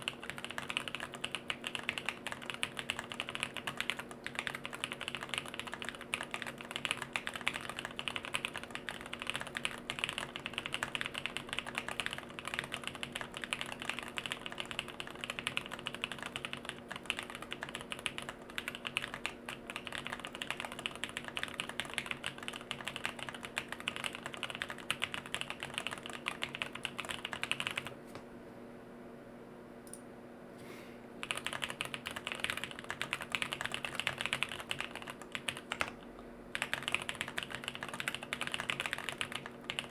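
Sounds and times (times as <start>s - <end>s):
fast mechanical keyboard typing: 0.0s - 28.0s, 31.2s - 39.9s.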